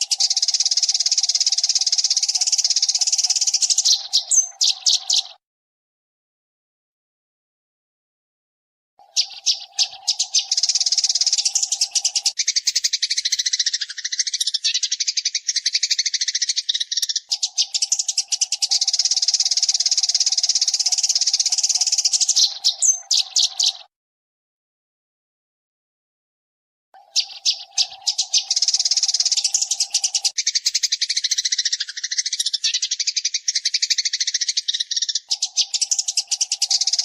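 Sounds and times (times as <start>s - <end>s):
sparrows chirping: 0.0s - 5.4s, 9.0s - 23.9s, 27.0s - 37.0s.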